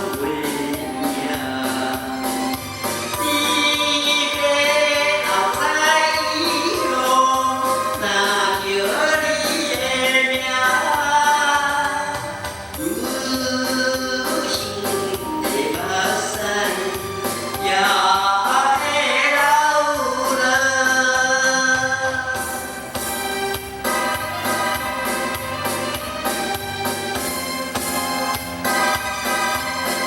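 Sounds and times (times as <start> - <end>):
man singing: 0.0 - 22.9
backing music with steady beat: 0.0 - 30.0.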